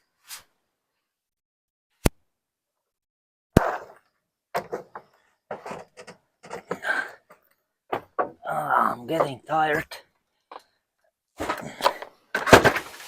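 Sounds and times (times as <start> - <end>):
clattering and rustling handling: 3.7 - 8.4, 11.4 - 13.0.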